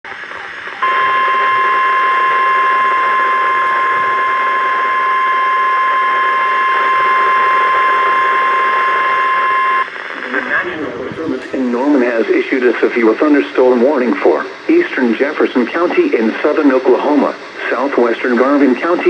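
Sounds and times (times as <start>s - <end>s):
radio reception hiss: 0.0s - 19.0s
steady warning alarm tone: 0.1s - 9.9s.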